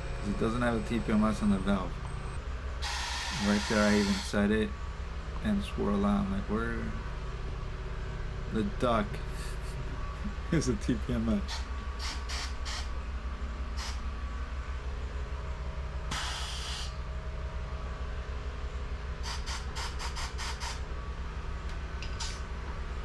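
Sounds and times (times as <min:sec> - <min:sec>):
tire-changing machine hum: 0:00.0 - 0:23.0
air hissing: 0:02.8 - 0:04.4, 0:11.5 - 0:12.9, 0:13.8 - 0:14.1, 0:16.1 - 0:17.0, 0:19.2 - 0:20.8, 0:22.0 - 0:22.5.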